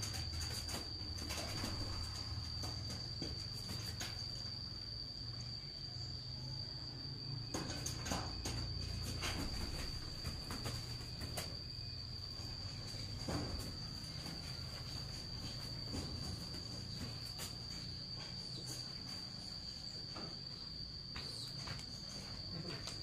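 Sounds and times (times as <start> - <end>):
crickets trilling: 0.0 - 23.0.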